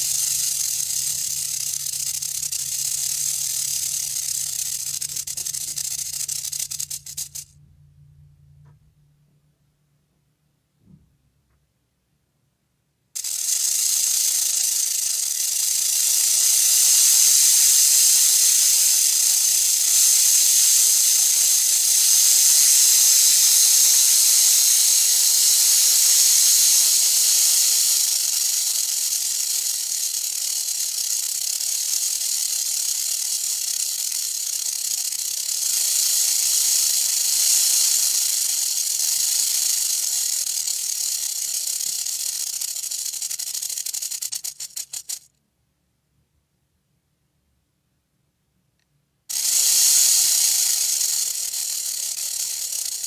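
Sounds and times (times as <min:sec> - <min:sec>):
rattlesnake tail rattling: 0:00.0 - 0:07.6, 0:13.2 - 0:45.3, 0:49.3 - 0:53.0.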